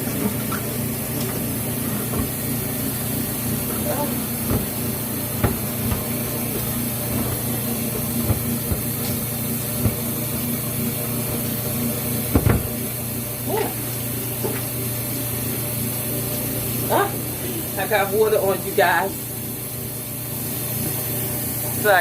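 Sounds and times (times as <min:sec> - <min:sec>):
water running from tap: 0:00.0 - 0:22.0.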